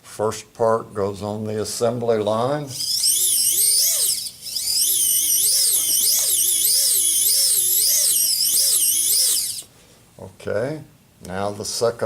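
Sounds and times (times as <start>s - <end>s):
small electric motors whining: 2.7s - 9.7s.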